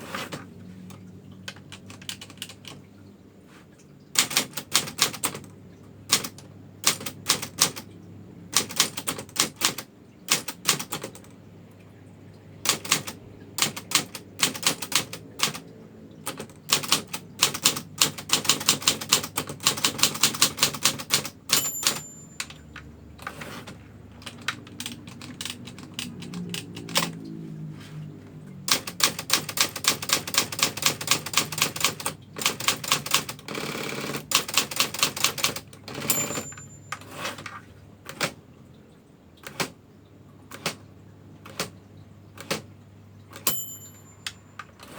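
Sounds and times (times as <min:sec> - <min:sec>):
manual typewriter typing: 0:00.0 - 0:02.9, 0:04.1 - 0:07.9, 0:08.5 - 0:11.4, 0:12.6 - 0:27.3, 0:28.6 - 0:38.4, 0:39.4 - 0:39.8, 0:40.5 - 0:40.8, 0:41.4 - 0:41.8, 0:42.4 - 0:42.7, 0:43.3 - 0:44.9
typewriter bell ding: 0:18.6 - 0:23.5, 0:35.0 - 0:37.4, 0:43.4 - 0:44.9.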